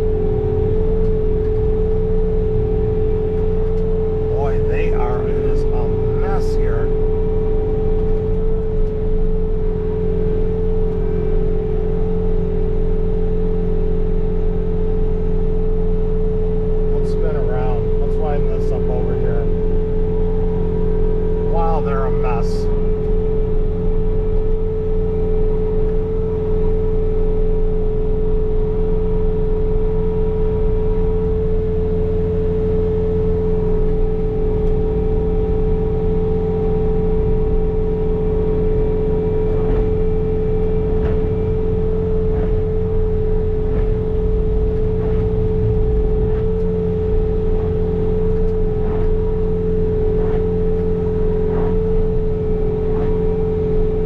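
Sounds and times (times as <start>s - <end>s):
diesel engine running: 0.0s - 54.0s
snow blower whine: 0.0s - 54.0s.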